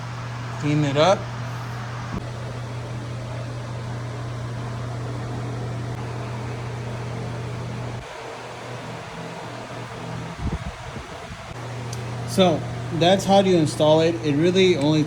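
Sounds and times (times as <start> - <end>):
electric fan humming: 0.0 - 15.0.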